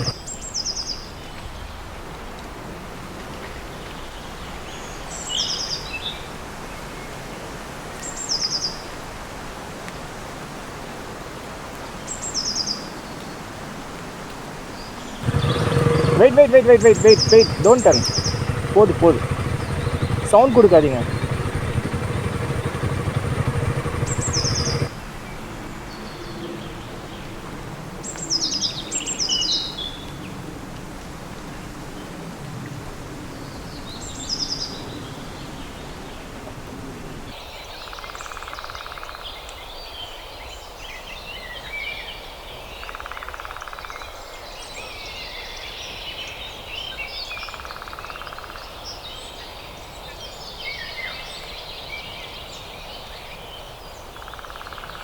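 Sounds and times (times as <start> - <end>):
bird chirps chatter: 15.2 - 24.9
high falling bird calls: 15.2 - 24.9
short buzz: 15.2 - 24.9
vehicle engine idling: 15.2 - 24.9.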